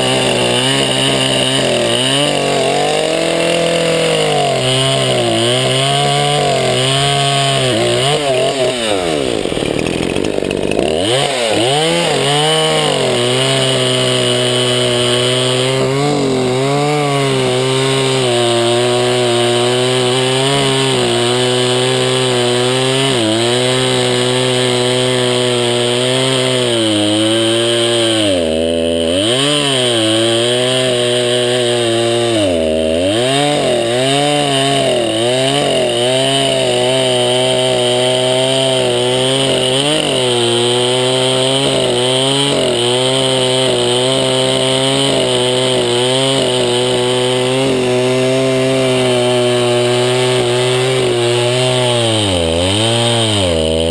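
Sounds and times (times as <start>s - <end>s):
chainsaw cutting log: 0.0s - 53.9s.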